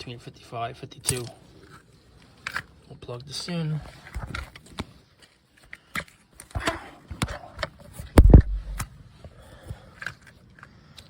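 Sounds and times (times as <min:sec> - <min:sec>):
heavy low bump: 0:08.2 - 0:08.8.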